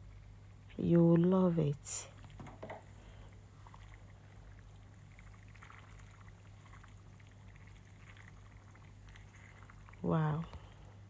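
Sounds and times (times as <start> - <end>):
low steady hum: 0.0 - 11.0
stew bubbling and popping: 2.1 - 11.0.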